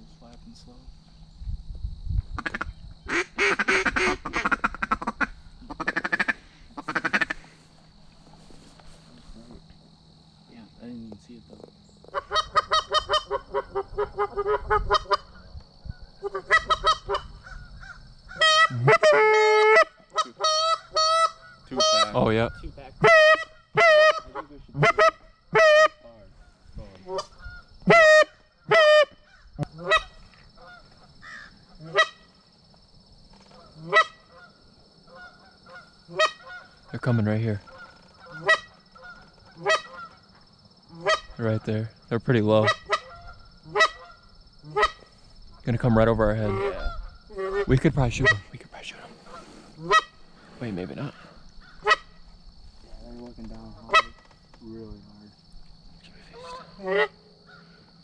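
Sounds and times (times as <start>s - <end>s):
duck quacking: 2.4s - 7.5s, 12.1s - 15.5s, 16.2s - 17.6s, 18.3s - 22.2s, 23.0s - 26.0s, 37.6s - 40.2s, 42.6s - 45.1s, 56.3s - 57.7s
goose honking: 2.4s - 7.6s, 12.1s - 15.5s, 16.2s - 22.2s, 23.0s - 32.4s, 33.5s - 41.4s, 42.6s - 45.6s, 46.3s - 48.5s, 49.2s - 52.2s, 56.3s - 57.8s.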